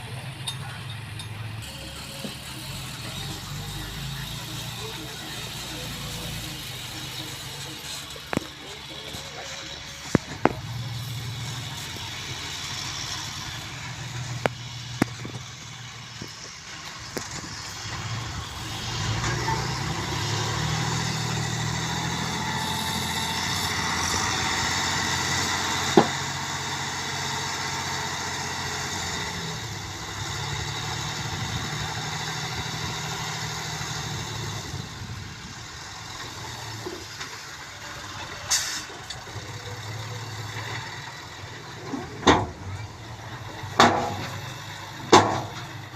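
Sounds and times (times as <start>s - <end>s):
heavy vehicle engine running: 0.0s - 45.9s.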